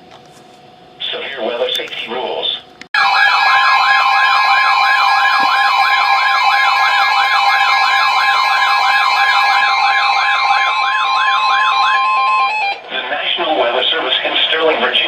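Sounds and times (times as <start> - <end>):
steady high alert tone: 3.0 - 15.0
warbling siren-like alarm: 3.0 - 15.0.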